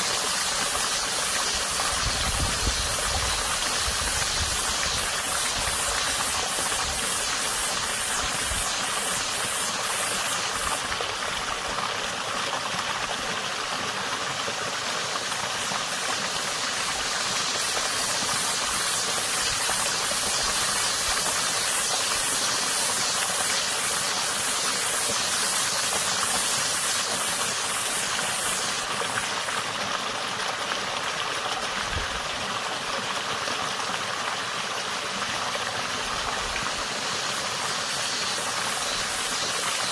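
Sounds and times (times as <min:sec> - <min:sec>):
cicada buzzing: 0:00.0 - 0:11.5, 0:15.2 - 0:29.7, 0:36.6 - 0:39.9
creek water running: 0:00.0 - 0:39.9.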